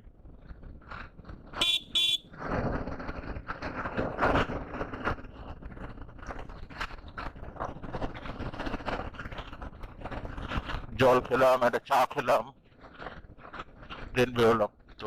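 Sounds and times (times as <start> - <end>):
motorcycle engine running: 0.8 - 6.3.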